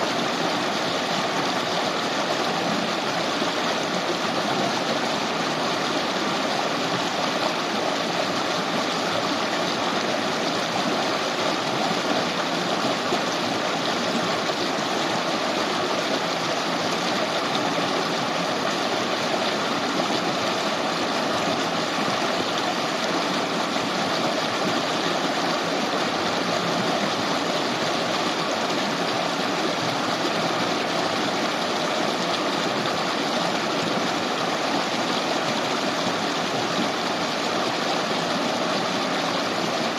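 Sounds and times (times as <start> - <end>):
river flowing over stones: 0.0 - 39.9.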